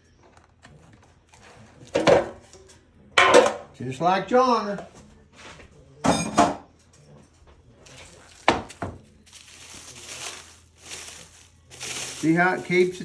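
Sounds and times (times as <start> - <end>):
metal tray clattering: 1.9 - 2.5, 3.2 - 3.7.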